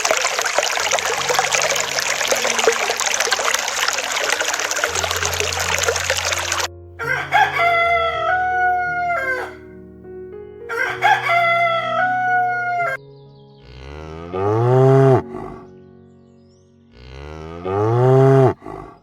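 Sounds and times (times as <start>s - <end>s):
rooster crowing: 7.0s - 9.6s, 10.7s - 13.0s
cow mooing: 13.6s - 15.6s, 16.9s - 19.0s.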